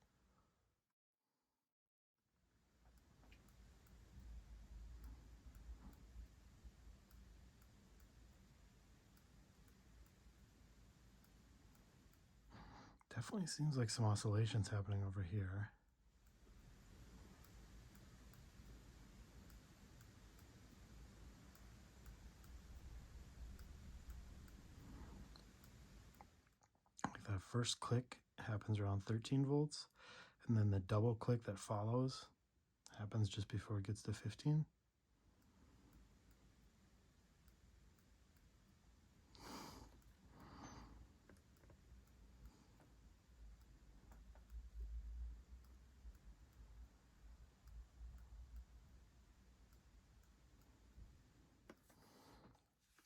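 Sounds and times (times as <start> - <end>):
faint ticking clicks from amplifier: 2.8 - 27.2, 35.3 - 53.0
breaths near microphone: 12.5 - 13.0, 29.9 - 30.4, 51.8 - 52.6.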